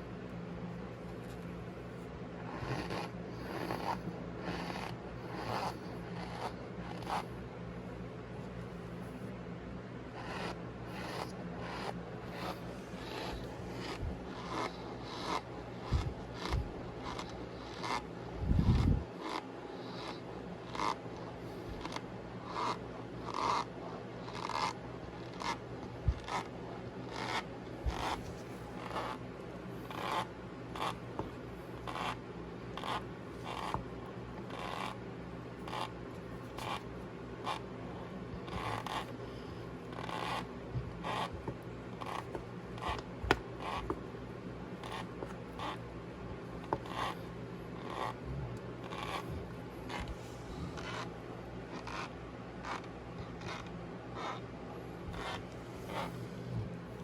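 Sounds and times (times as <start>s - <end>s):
cornstarch squeaking: 39.9s - 41.4s.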